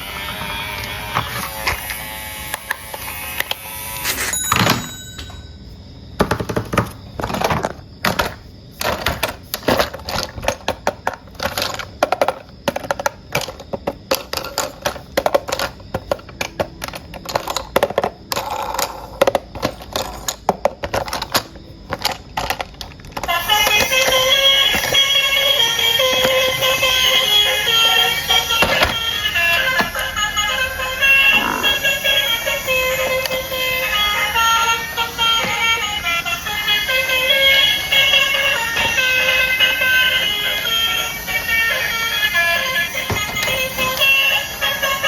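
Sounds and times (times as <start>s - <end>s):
electronic toy jingle: 3.2s - 5.6s, 23.3s - 45.0s
plastic toy parts clacking: 6.2s - 45.0s.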